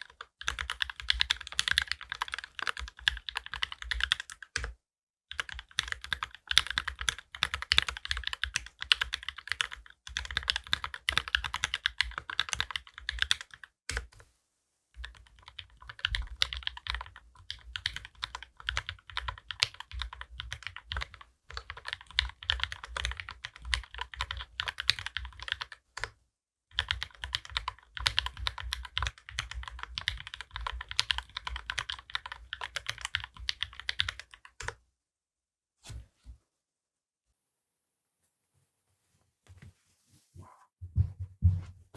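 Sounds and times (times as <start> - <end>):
mechanical keyboard typing: 0.0 - 14.1, 15.0 - 26.1, 26.7 - 34.8.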